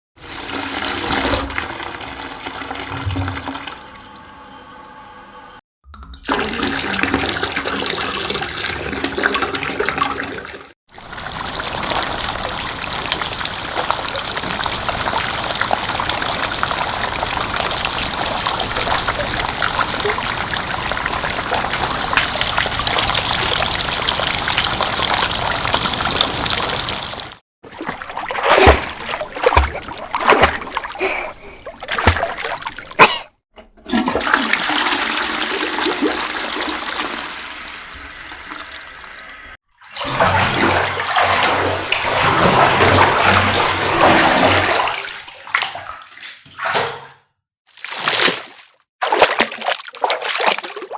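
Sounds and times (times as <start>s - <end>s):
loud water splashes: 6.2s - 33.3s, 39.8s - 46.9s, 47.7s - 50.9s
running water: 6.2s - 33.3s.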